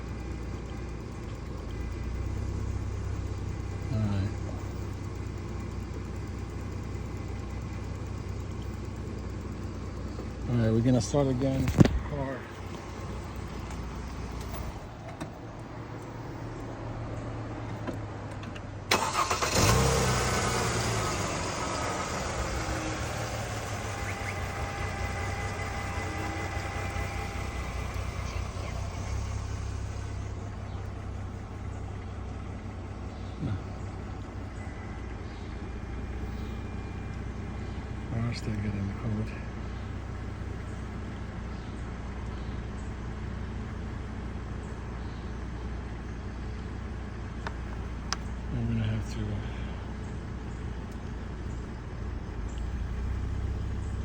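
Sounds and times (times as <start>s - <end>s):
car engine idling: 0.0s - 54.0s
starter cranking engine: 18.9s - 31.7s.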